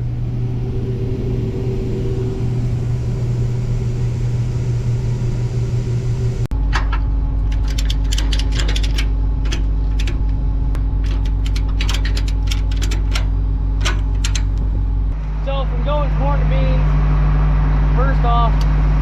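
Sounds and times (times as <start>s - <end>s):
combine harvester humming: 0.0s - 19.0s
sharp clicks and ticks: 6.8s - 10.4s, 11.0s - 14.7s.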